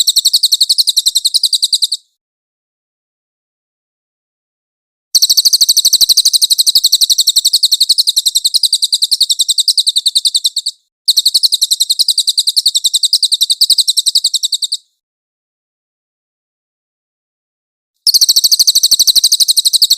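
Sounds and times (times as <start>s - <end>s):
bird trilling: 0.0s - 2.1s, 5.2s - 14.9s, 18.1s - 19.9s.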